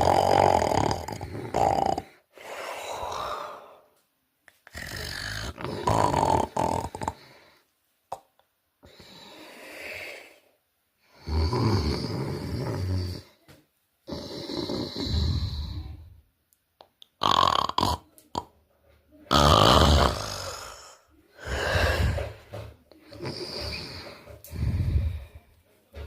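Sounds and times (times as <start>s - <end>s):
person snoring and snorting: 0.0s - 3.8s, 4.6s - 7.5s, 11.1s - 13.4s, 14.1s - 16.1s, 17.2s - 18.6s, 19.3s - 25.4s.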